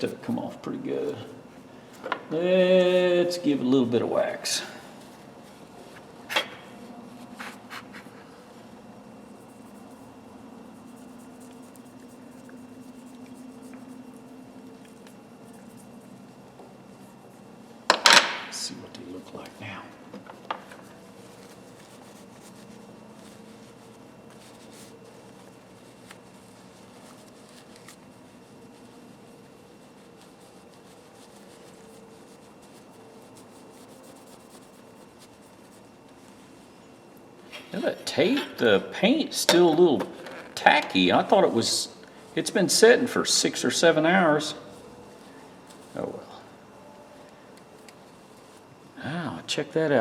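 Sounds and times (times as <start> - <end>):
steady low hum: 0.0 - 50.0
wax rubbing on metal pliers: 9.1 - 17.9, 20.4 - 36.8.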